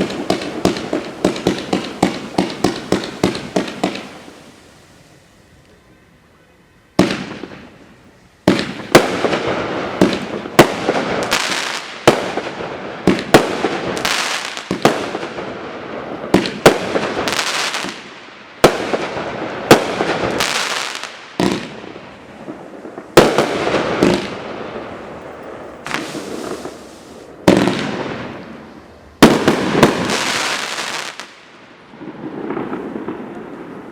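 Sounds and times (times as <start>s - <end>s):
fireworks cake firing bangs: 0.0s - 4.4s, 8.5s - 15.6s, 16.2s - 24.5s, 25.8s - 28.4s, 29.2s - 31.3s.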